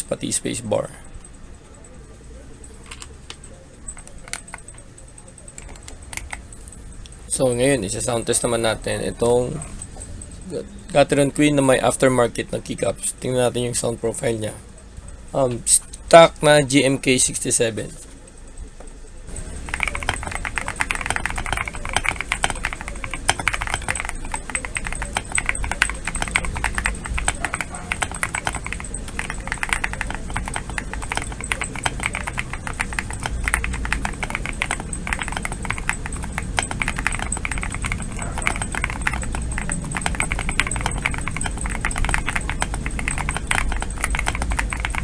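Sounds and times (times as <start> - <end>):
fast typing on mechanical keyboard: 2.6 - 6.6, 7.3 - 9.7, 19.3 - 45.0.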